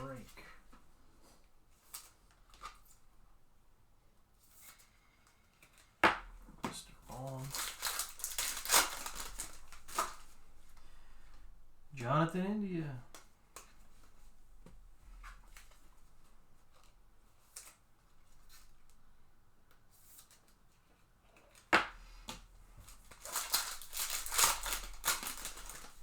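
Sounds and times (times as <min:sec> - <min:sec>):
crisp rustling and crinkling: 0:00.0 - 0:03.1, 0:04.4 - 0:12.1, 0:12.8 - 0:26.0
trading cards rustling: 0:06.6 - 0:10.8, 0:21.4 - 0:26.0.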